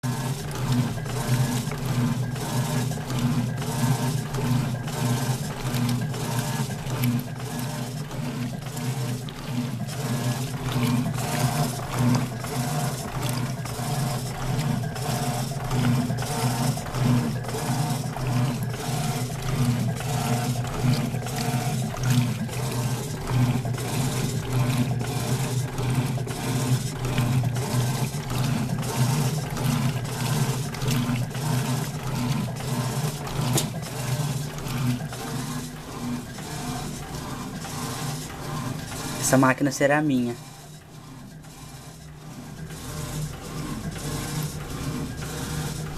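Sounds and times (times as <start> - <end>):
washing machine motor hum: 0.0 - 45.9
water sloshing: 18.2 - 35.2.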